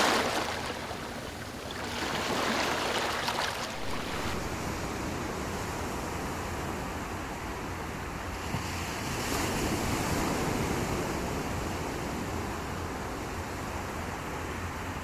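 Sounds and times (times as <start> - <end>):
waves washing onto sandy beach: 0.0 - 4.4.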